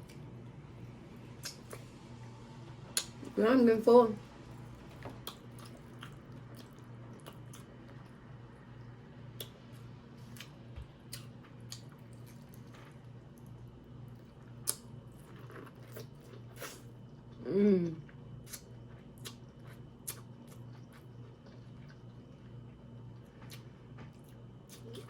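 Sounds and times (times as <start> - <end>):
faint low hum: 0.0 - 25.0
chewing mouth noises: 5.0 - 8.1, 18.4 - 22.6.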